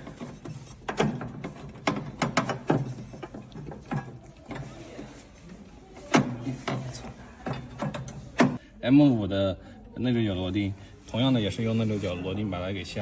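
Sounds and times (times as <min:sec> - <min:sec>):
metal brackets knocking and clattering: 0:00.0 - 0:05.2, 0:06.0 - 0:08.6.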